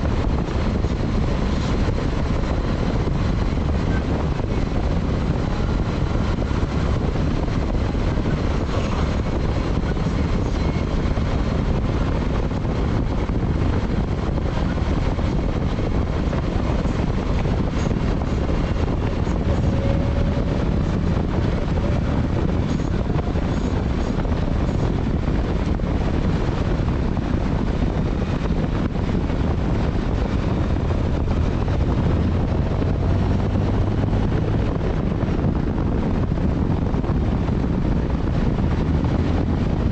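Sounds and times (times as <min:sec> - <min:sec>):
motorcycle engine drone: 0:00.0 - 0:39.9
wind rush on microphone: 0:00.0 - 0:39.9.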